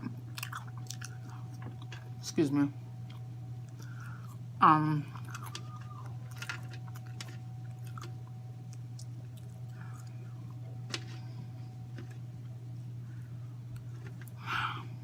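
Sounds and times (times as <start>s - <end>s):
steady low hum: 0.0s - 15.0s
person chewing food: 0.3s - 2.2s, 5.1s - 12.6s.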